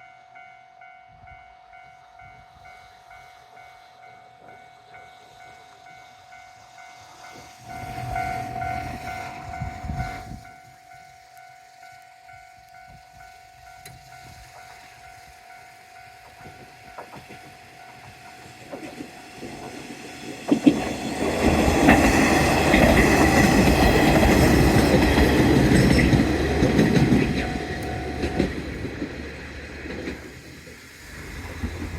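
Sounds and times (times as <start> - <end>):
level-crossing alarm ringing: 0.0 - 28.9
diesel railcar engine: 0.0 - 31.9
train wheels clattering on rail joints: 16.1 - 31.9.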